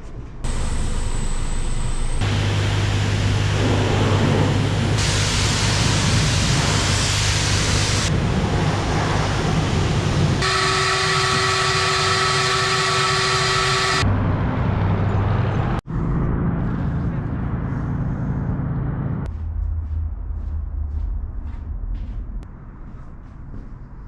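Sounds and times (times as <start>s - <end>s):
multi-tone machine whine: 0.4s - 14.2s
car wash spray rushing: 0.5s - 14.0s.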